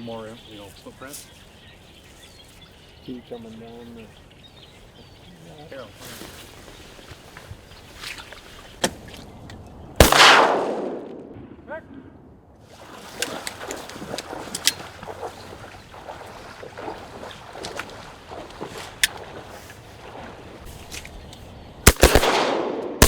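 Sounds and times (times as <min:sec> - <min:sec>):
loud shotgun shot: 0:10.0 - 0:11.6, 0:21.9 - 0:23.0
light sharp clicks: 0:13.2 - 0:14.9.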